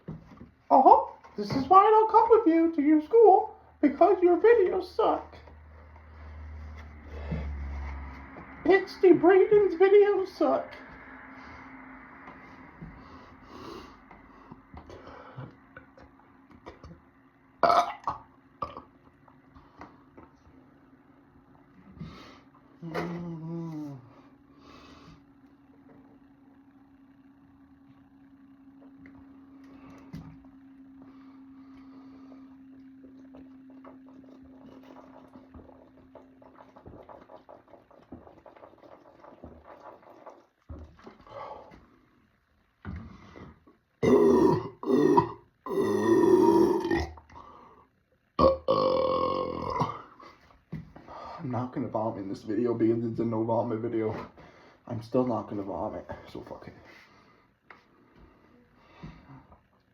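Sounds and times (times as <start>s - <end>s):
low hum: 0.0s - 54.7s
man burping: 17.6s - 19.1s, 44.0s - 47.4s, 48.4s - 50.2s
fizzy drink being chugged: 33.1s - 41.2s.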